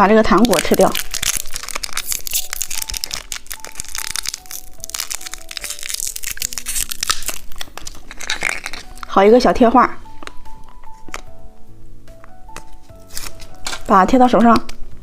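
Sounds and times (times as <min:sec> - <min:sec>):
soft background music: 0:00.0 - 0:15.0
chewing hard candy: 0:00.4 - 0:09.1.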